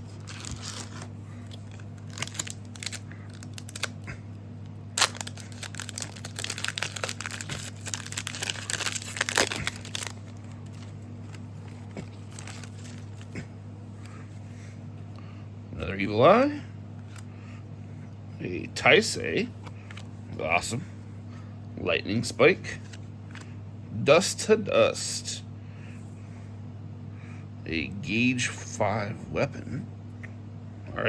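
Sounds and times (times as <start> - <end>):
wrapper crinkling and tearing: 0.0 - 4.1, 5.0 - 13.3
steady low hum: 0.0 - 31.0.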